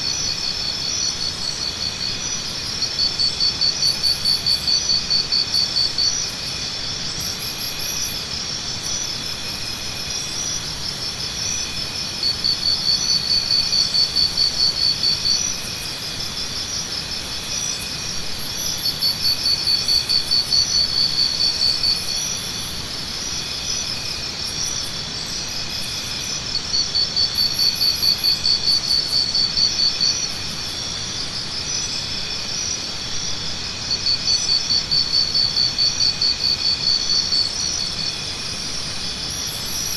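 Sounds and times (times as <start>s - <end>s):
insects trilling: 0.0s - 39.9s
loud pulsing insect trill: 0.0s - 39.9s.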